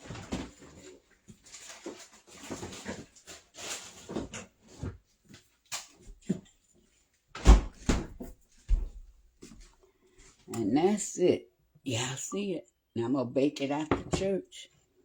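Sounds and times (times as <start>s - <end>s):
kitchen knocks and clunks: 7.4s - 9.0s, 13.9s - 14.4s.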